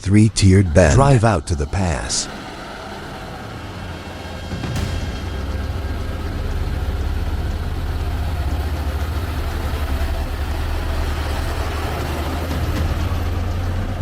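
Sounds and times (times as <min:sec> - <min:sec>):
heavy diesel truck engine throbbing: 0:00.0 - 0:14.0.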